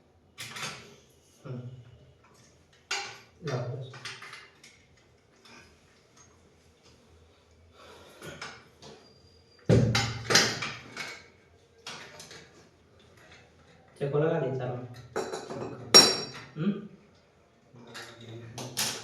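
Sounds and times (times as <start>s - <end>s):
knocks and clatter of handling stand: 9.7s - 11.3s, 15.0s - 16.5s.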